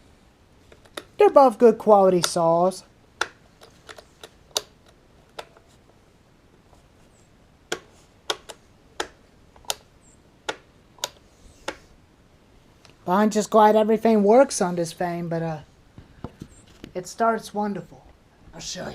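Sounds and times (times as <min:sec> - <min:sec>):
quiet hiss: 0:00.0 - 0:18.9.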